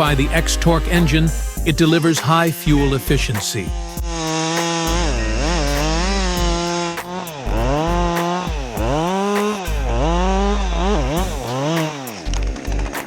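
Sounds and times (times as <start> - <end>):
chainsaw cutting wood: 3.7 - 13.0.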